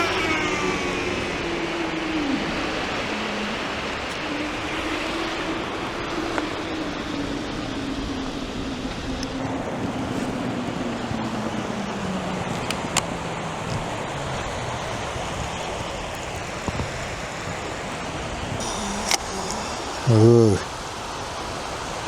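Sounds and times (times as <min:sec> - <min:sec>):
brief clicks: 0:18.6 - 0:19.7.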